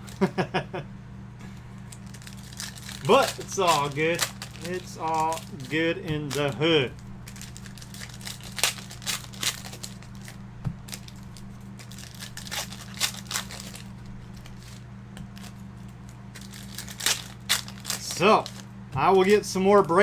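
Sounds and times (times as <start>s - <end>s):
low electrical hum: 0.0s - 20.0s
plastic packaging crinkling: 1.8s - 19.4s.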